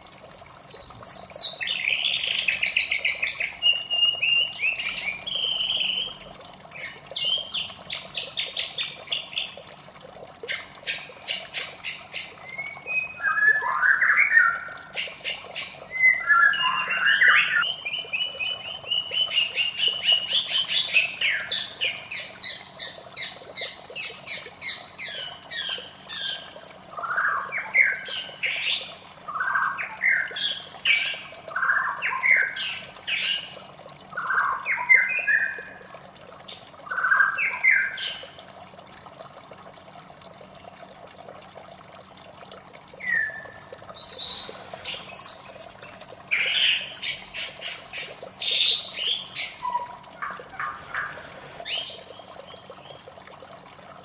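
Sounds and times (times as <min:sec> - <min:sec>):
running water: 0:00.0 - 0:54.0
songbird singing: 0:00.6 - 0:09.5, 0:10.9 - 0:33.5, 0:43.0 - 0:47.8, 0:48.4 - 0:53.0.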